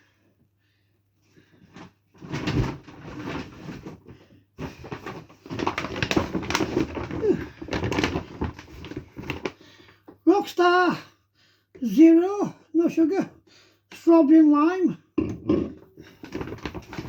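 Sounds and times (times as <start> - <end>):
shopping bags rustling: 1.7 - 10.0, 16.1 - 17.0
plastic crinkling: 2.2 - 10.2, 16.0 - 17.0
items knocking: 4.7 - 9.5, 15.2 - 17.0.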